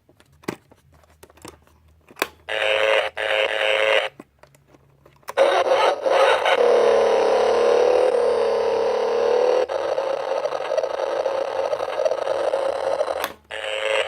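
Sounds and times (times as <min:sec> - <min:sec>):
toy electronic engine sound: 0:02.5 - 0:04.2, 0:05.4 - 0:14.0.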